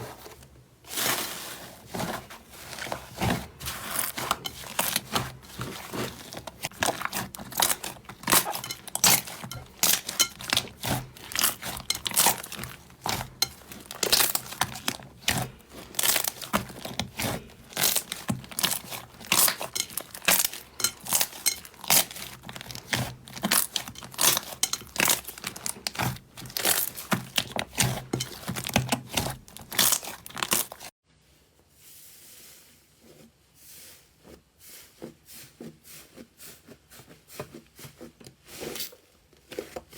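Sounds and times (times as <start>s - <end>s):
slime crackling and popping: 3.9s - 30.9s.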